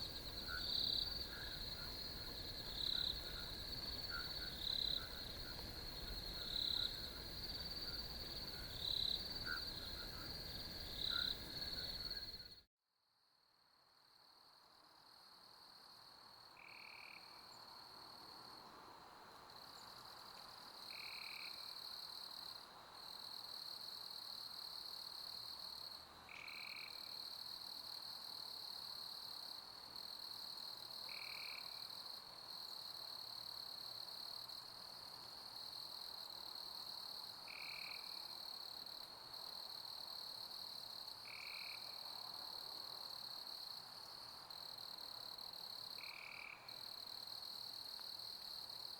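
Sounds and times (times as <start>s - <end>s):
crickets trilling: 0.0s - 12.6s.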